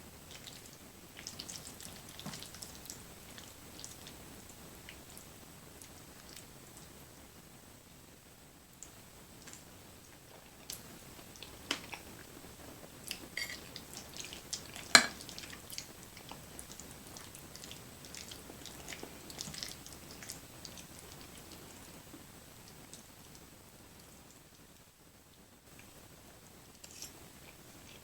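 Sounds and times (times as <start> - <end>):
wet chewing and mouth smacks: 0.3 - 4.2, 10.2 - 12.3, 13.0 - 21.8.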